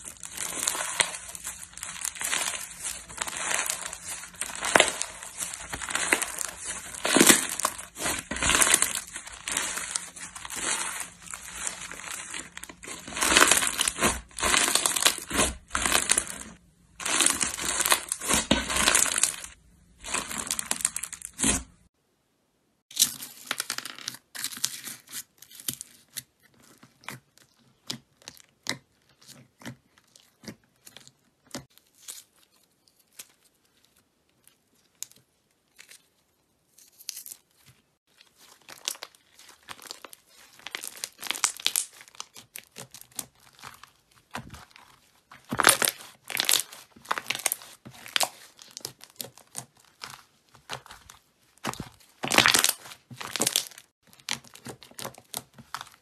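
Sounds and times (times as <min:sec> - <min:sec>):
slime crackling and popping: 0:00.0 - 0:21.9, 0:38.4 - 0:56.0.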